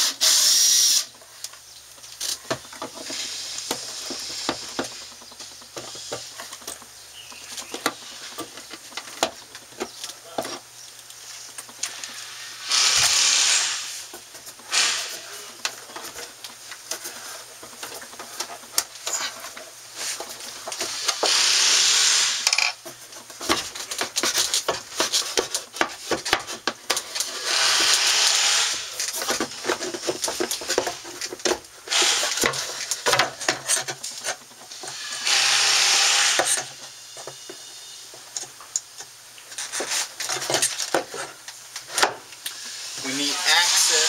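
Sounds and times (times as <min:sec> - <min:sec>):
screw gun grinding: 0:11.8 - 0:14.1, 0:20.7 - 0:22.8, 0:27.1 - 0:31.0, 0:31.9 - 0:36.8.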